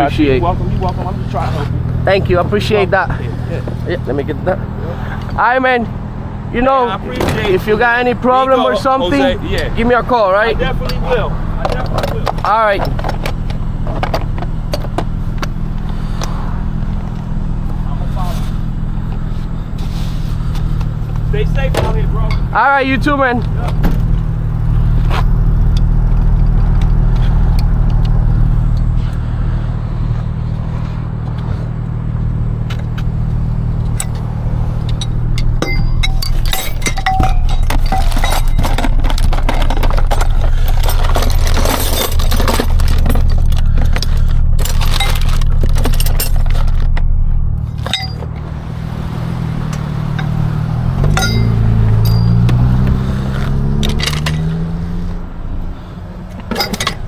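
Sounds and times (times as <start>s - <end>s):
vehicle engine idling: 0.0s - 57.0s
sharp metallic clinks: 33.9s - 46.8s, 47.7s - 48.4s, 50.1s - 54.7s.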